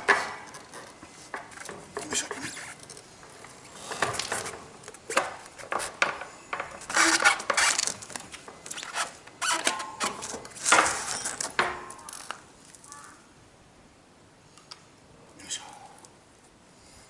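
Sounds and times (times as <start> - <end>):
metal squeaks: 6.8 - 7.9, 8.8 - 10.3.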